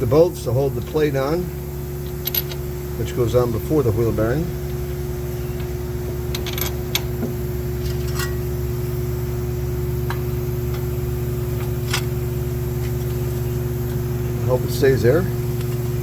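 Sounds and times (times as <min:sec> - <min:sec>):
low mechanical hum: 0:00.0 - 0:16.0
metallic clicks of bolts and tools: 0:02.0 - 0:02.6, 0:06.3 - 0:07.1.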